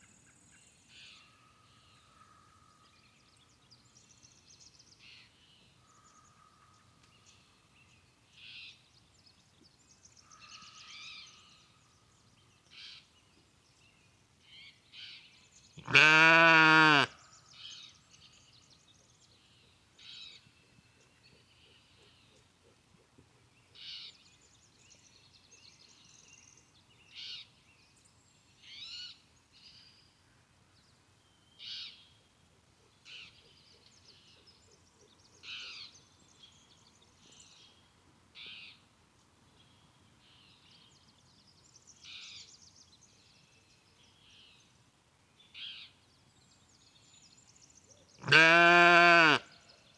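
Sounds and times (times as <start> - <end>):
sheep bleating: 15.8 - 17.1, 48.2 - 49.5
birds calling: 48.2 - 49.5.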